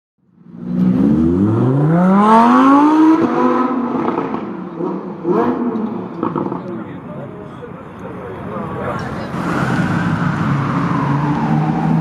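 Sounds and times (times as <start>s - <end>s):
sports car engine accelerating: 0.5s - 6.8s.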